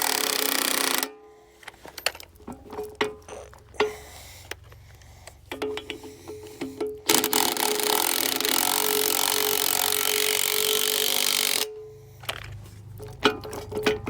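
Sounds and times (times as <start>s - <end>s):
power tool running: 0.0s - 1.1s, 7.1s - 11.7s.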